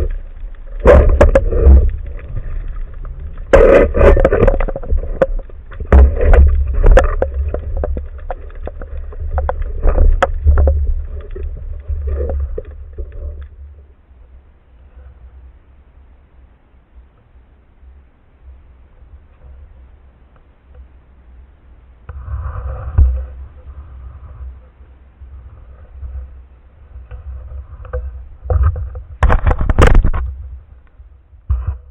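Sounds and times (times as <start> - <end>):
water sloshing and splashing: 0.0 - 13.8
deep continuous rumble: 0.0 - 31.9
loud knocks and clatter: 28.5 - 30.3.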